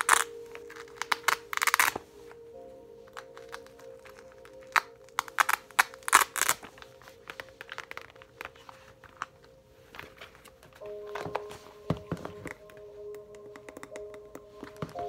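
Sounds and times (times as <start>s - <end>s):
crinkly scrapes: 3.1s - 11.7s.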